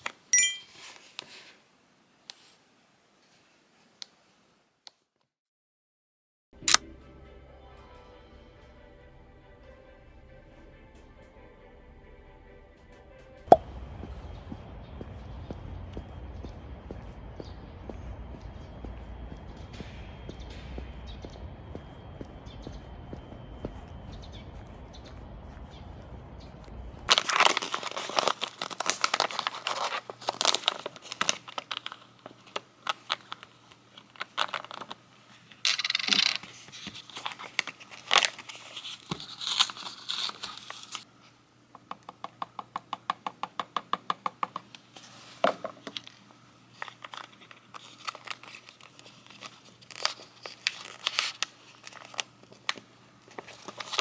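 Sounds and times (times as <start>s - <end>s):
crinkling rustles: 0.0s - 1.7s, 27.1s - 41.1s, 44.9s - 54.0s
clicks and taps: 41.7s - 44.8s.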